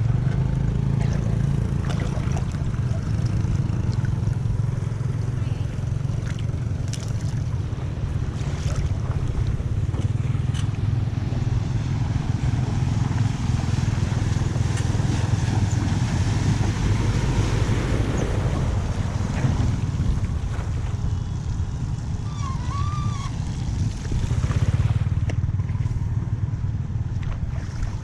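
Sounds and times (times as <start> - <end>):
floodwater rushing into drain: 0.8 - 21.1
wind on microphone: 1.0 - 28.0.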